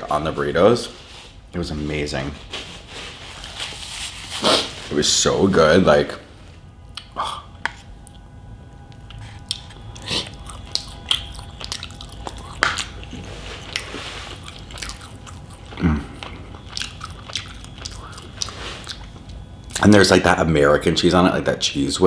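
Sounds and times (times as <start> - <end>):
short low hum: 4.4 - 20.8
person chewing food: 6.9 - 20.0.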